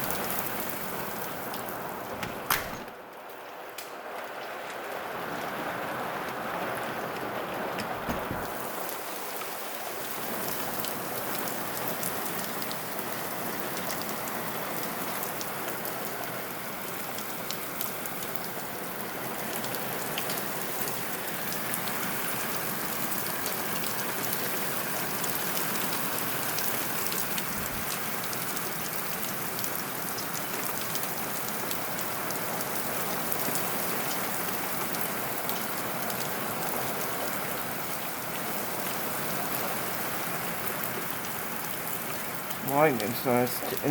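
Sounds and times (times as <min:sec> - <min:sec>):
steady rain falling: 0:00.0 - 0:43.9
raindrops ticking sharply: 0:40.6 - 0:43.9.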